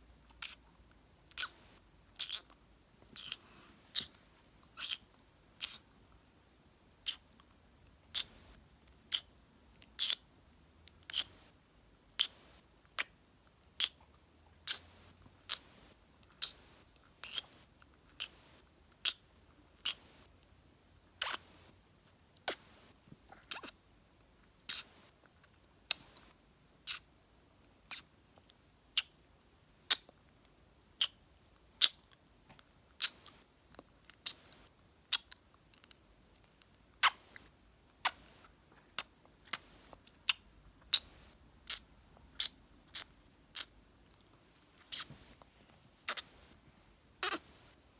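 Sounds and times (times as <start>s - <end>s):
kissing lip smacks: 0.4s - 0.6s, 1.3s - 1.6s, 2.2s - 2.6s, 3.2s - 4.2s, 4.8s - 5.9s, 7.0s - 7.4s, 9.1s - 10.2s, 11.1s - 11.4s, 13.8s - 14.1s, 14.7s - 14.9s, 15.5s - 15.7s, 17.2s - 17.6s, 18.2s - 19.2s, 21.2s - 21.5s, 23.4s - 23.8s, 24.7s - 25.0s, 26.9s - 27.1s, 27.9s - 28.1s, 29.9s - 30.1s, 31.0s - 32.2s, 33.0s - 33.4s, 35.1s - 36.0s, 37.0s - 38.2s, 39.0s - 43.8s, 44.9s - 45.2s, 46.1s - 46.3s, 47.2s - 47.5s.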